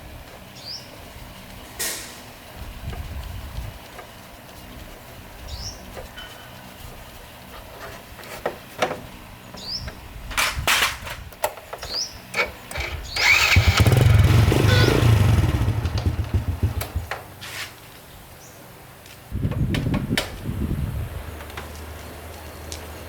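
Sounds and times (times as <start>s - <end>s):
small motorcycle engine running: 12.3s - 17.4s.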